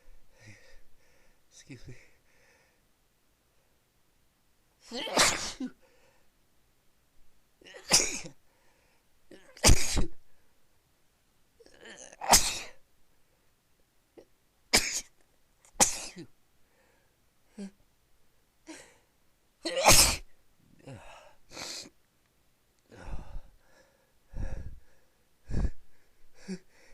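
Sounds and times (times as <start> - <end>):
quiet breaths: 0.0 - 4.0, 5.7 - 6.5, 8.4 - 9.4, 10.2 - 11.7, 13.0 - 14.4, 16.5 - 19.3, 20.3 - 22.1, 22.8 - 26.9
person sneezing: 4.9 - 5.8, 7.7 - 8.4, 9.4 - 10.2, 11.9 - 12.8, 19.7 - 22.0.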